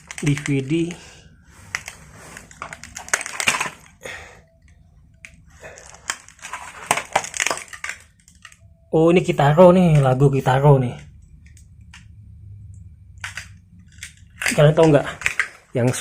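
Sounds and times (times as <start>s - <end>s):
clutter crunching and crackling: 0.0s - 4.2s, 5.2s - 8.7s, 13.2s - 16.0s.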